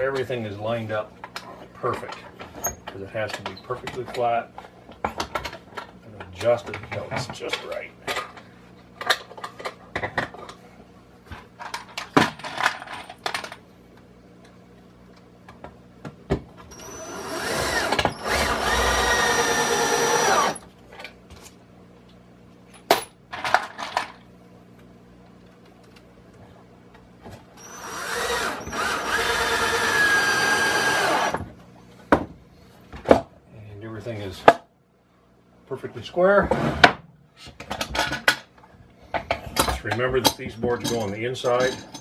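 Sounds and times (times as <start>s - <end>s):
power drill driving screws: 16.7s - 20.6s, 27.6s - 31.4s.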